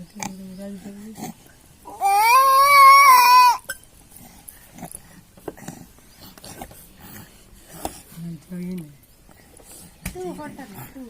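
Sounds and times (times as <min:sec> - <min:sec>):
baby crying: 0:01.9 - 0:03.7.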